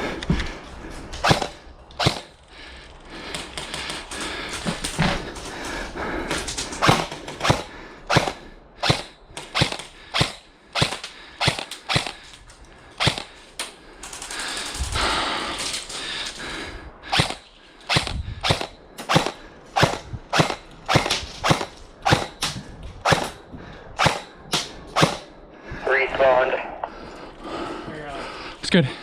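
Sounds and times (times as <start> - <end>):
airsoft gun shots: 1.2 - 2.3, 6.8 - 12.2, 13.0 - 13.3, 17.1 - 23.4, 24.0 - 25.3.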